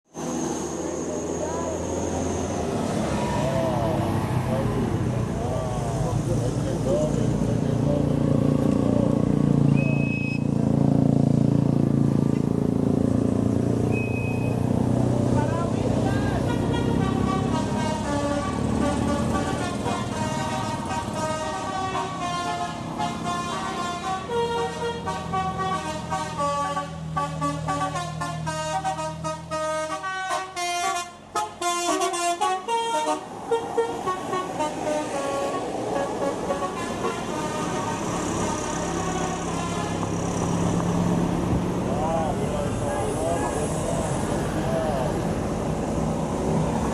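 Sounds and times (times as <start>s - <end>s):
road noise: 0.0s - 46.9s
bus diesel engine running: 0.1s - 46.9s
high whistle-like tone: 9.7s - 10.5s, 13.9s - 14.6s
musical air horn melody: 16.3s - 40.2s.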